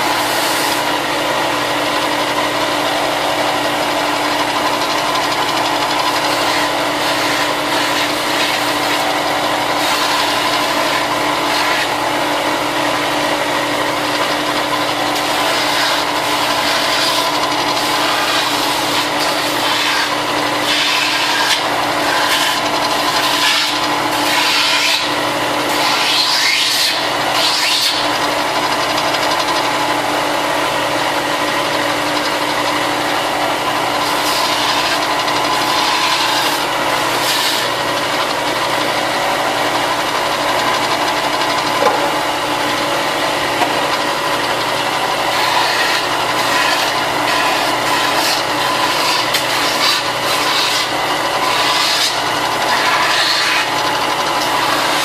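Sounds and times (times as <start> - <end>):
power sander motor hum: 0.0 - 55.0
plastic rasping against sander: 45.3 - 55.0.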